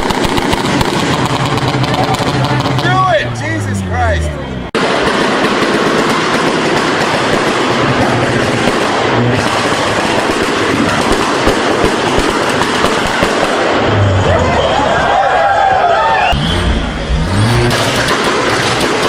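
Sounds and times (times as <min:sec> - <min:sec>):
car exhaust pops and bangs: 0:00.0 - 0:02.9, 0:16.4 - 0:19.0
car engine revving: 0:00.6 - 0:04.8, 0:06.6 - 0:14.9, 0:16.3 - 0:19.0.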